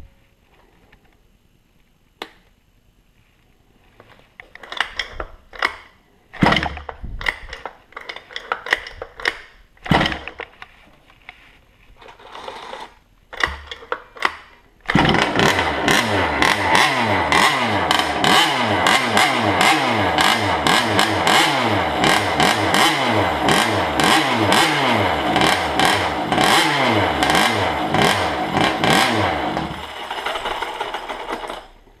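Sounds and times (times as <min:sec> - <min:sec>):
pull-start tugs clattering: 0:14.9 - 0:22.8, 0:27.2 - 0:31.8
two-stroke engine revving: 0:14.9 - 0:31.6.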